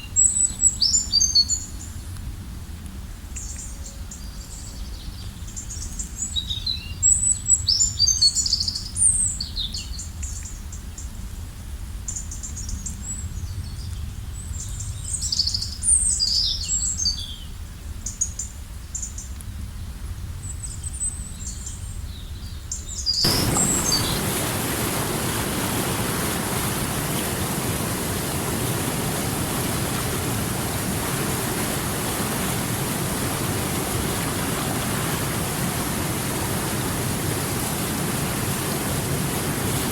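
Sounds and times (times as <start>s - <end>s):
river water flowing: 23.2s - 39.9s.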